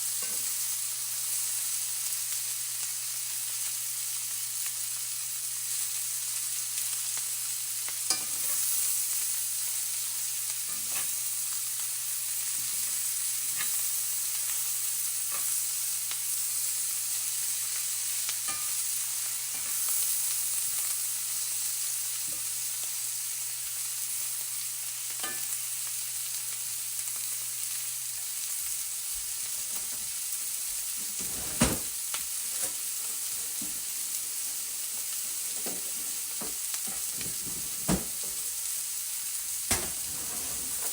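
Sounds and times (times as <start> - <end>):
cabbage sizzling in a pan: 0.0 - 40.9
utensil knocking and scraping pan: 32.5 - 38.4, 39.7 - 40.9.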